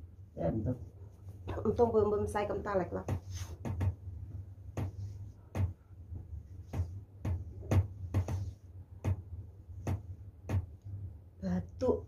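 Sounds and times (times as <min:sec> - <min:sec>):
low steady hum: 0:00.0 - 0:12.0
hands slapping a back: 0:02.9 - 0:04.1, 0:04.7 - 0:10.8.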